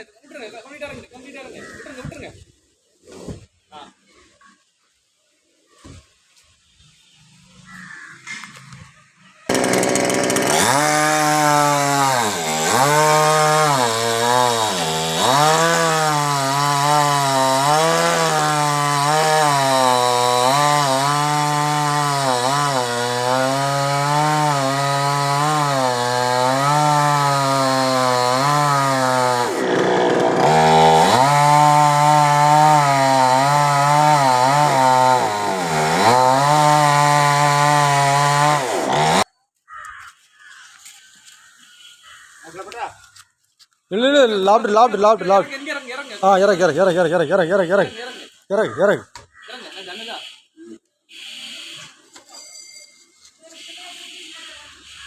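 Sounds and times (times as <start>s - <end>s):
chainsaw cutting wood: 9.5s - 39.3s.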